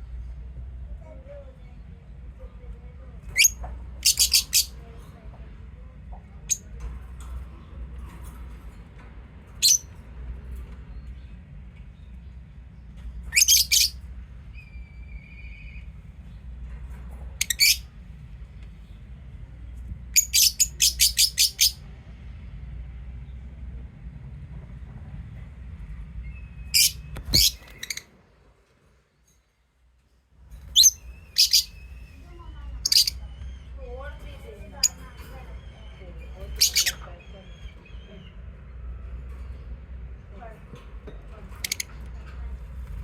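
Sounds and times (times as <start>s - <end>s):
low steady hum: 0.0s - 43.0s
lovebirds chirping: 3.3s - 4.8s, 13.3s - 14.0s, 17.4s - 17.9s, 20.2s - 21.8s, 26.2s - 28.1s, 30.6s - 38.4s.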